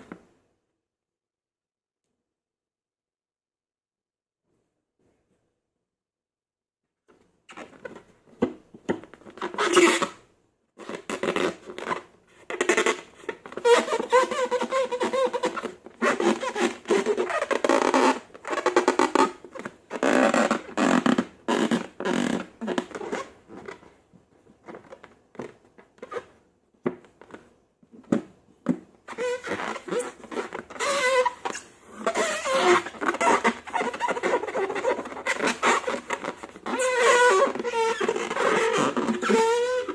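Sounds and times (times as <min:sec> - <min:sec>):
balloon squeaky squeals: 0:09.4 - 0:10.2, 0:10.8 - 0:23.8, 0:29.1 - 0:39.9.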